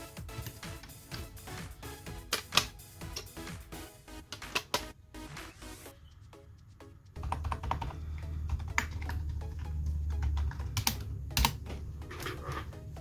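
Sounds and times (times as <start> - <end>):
rapid keyboard typing: 7.1 - 12.6.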